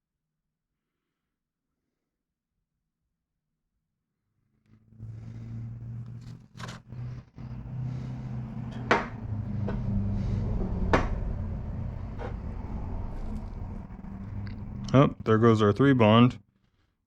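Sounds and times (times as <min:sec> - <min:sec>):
steady low hum: 0:05.0 - 0:16.4.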